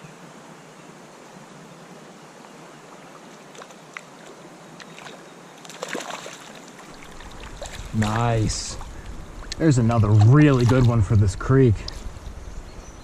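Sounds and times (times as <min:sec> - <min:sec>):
flowing creek: 0:00.0 - 0:13.0
water splashes and clicks: 0:03.3 - 0:11.2, 0:11.8 - 0:12.4.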